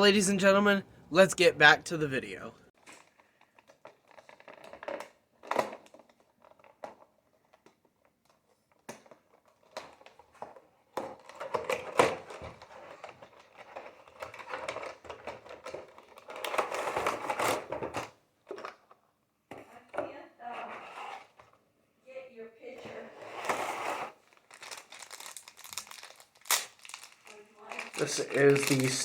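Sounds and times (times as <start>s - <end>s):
plastic packaging rustling: 2.8s - 7.8s, 24.0s - 29.0s.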